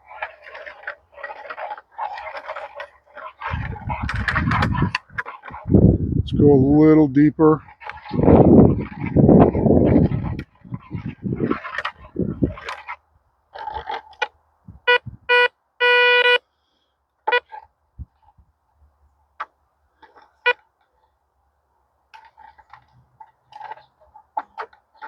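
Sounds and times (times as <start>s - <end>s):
scraping and handling noise: 0.0s - 6.0s, 7.6s - 14.9s, 22.0s - 25.0s
metal detector beeps: 14.9s - 16.4s, 17.3s - 17.5s.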